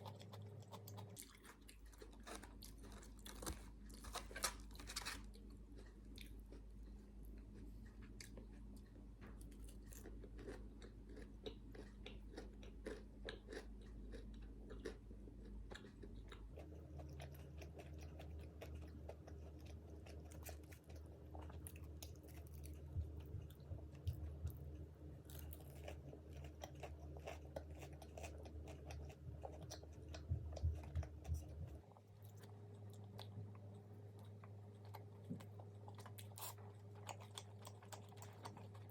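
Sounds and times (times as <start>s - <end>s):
chewing crunchy fried food: 0.0s - 38.9s
low steady hum: 0.0s - 38.9s.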